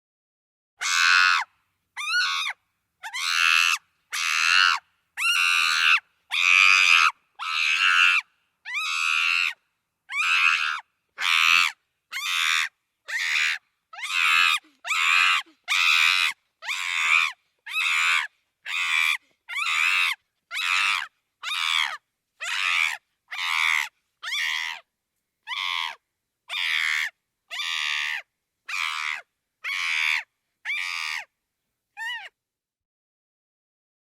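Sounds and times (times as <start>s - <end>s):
chimpanzee screaming: 0.8s - 1.4s, 2.0s - 24.8s, 25.5s - 31.3s.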